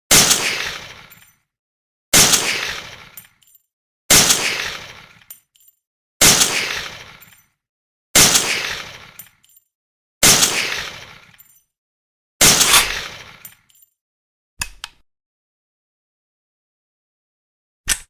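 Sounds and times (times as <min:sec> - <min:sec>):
rifle shots: 0:00.1 - 0:01.1, 0:02.2 - 0:03.1, 0:04.1 - 0:05.1, 0:06.2 - 0:07.2, 0:08.2 - 0:09.2, 0:10.2 - 0:11.2, 0:12.4 - 0:13.2.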